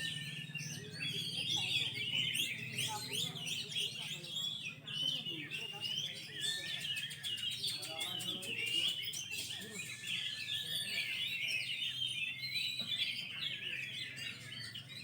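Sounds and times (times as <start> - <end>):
songbirds singing: 0.0 - 15.0.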